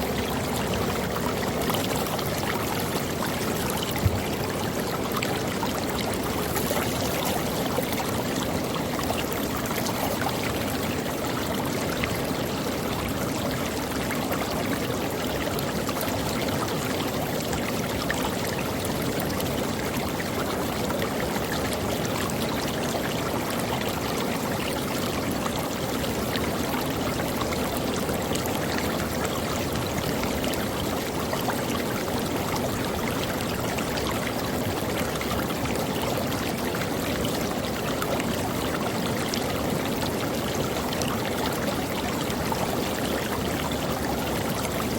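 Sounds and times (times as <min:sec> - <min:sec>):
creek water splashing over rocks: 0:00.0 - 0:17.4.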